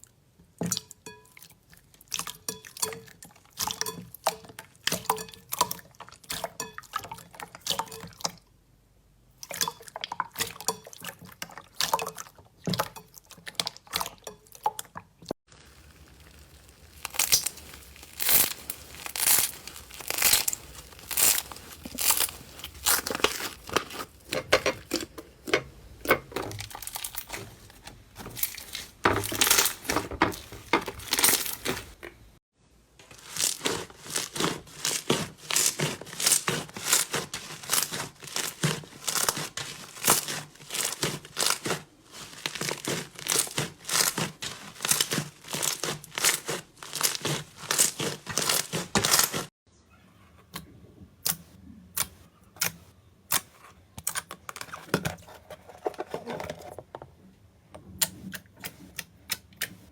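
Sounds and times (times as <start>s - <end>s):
slime crackling and popping: 15.5s - 25.1s, 26.6s - 27.4s, 28.4s - 32.0s, 33.1s - 49.5s.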